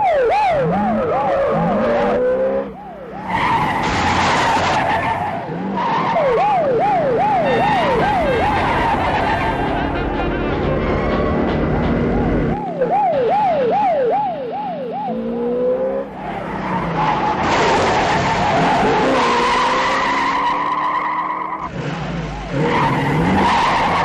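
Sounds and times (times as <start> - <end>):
police siren wailing: 0.0 - 21.7, 22.6 - 24.0
car engine revving: 0.4 - 13.7
tyres squealing in a skid: 3.2 - 11.8, 16.4 - 21.7, 22.5 - 24.0.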